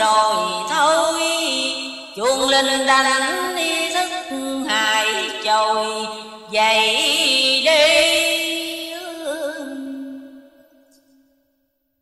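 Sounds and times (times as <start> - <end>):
woman chanting verse: 0.0 - 10.2.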